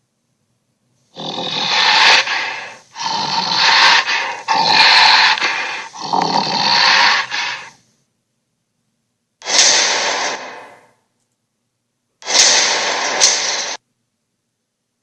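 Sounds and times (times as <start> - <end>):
cartoon dinosaur growls: 1.2 - 7.8.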